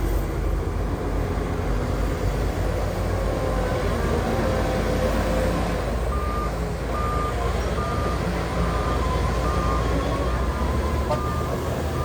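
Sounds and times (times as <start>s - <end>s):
diesel engine rumble: 0.0s - 12.0s
reversing alarm beeping: 6.1s - 12.0s.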